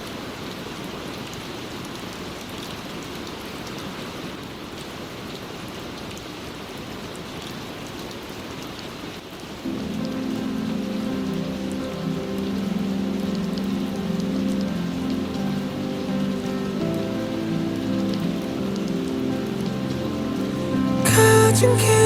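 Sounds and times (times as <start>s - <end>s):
steady rain falling: 0.0s - 22.0s
instrumental music with sustained notes: 9.7s - 22.0s.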